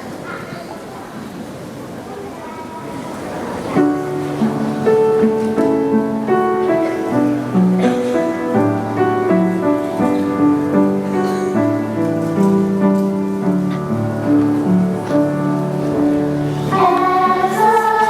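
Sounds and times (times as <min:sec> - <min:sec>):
slow instrumental chords: 0:12.6 - 0:18.0.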